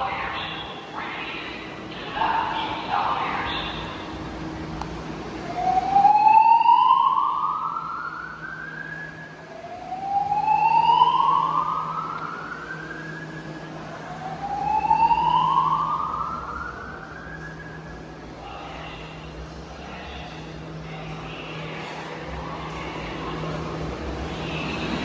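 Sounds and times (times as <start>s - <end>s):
slow whoop evacuation tone: 5.8s - 18.2s.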